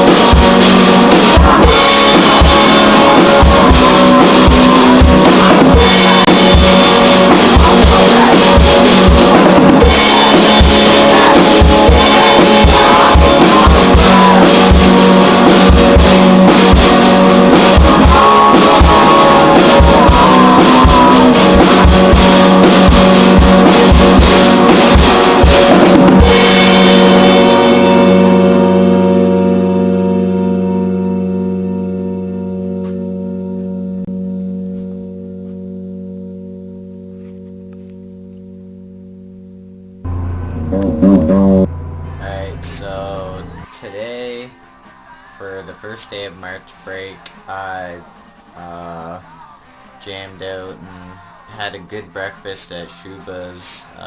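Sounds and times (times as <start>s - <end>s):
rock band playing: 0.0s - 36.6s, 40.0s - 44.6s
guitar chord ringing: 0.1s - 44.5s.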